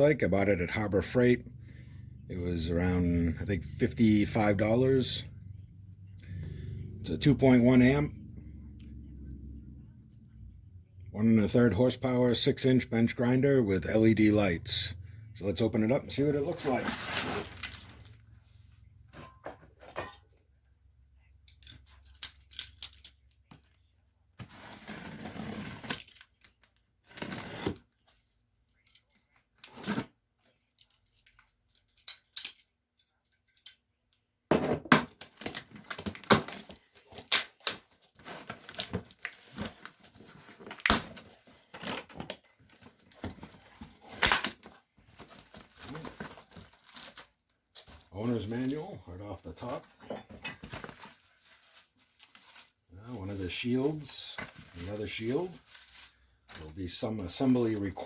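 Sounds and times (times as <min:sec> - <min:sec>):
packaging rustling: 0:16.5 - 0:18.3, 0:35.2 - 0:48.8, 0:50.6 - 0:56.8.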